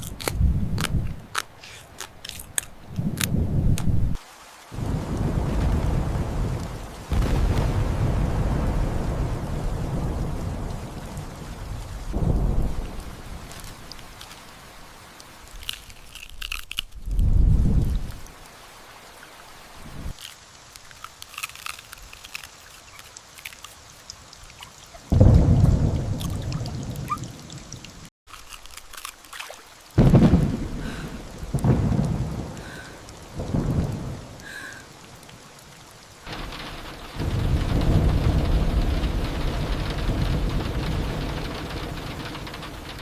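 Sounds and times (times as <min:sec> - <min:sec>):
steady rain pattering: 0:00.0 - 0:43.0
thunder peals: 0:04.8 - 0:13.7, 0:25.1 - 0:27.2, 0:30.0 - 0:34.6, 0:36.3 - 0:43.0.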